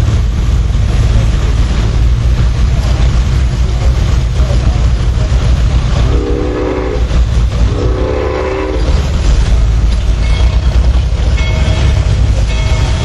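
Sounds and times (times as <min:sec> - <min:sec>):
steady low rumble: 0:00.0 - 0:13.0
locomotive whistle blasts: 0:06.0 - 0:07.1, 0:07.7 - 0:08.9.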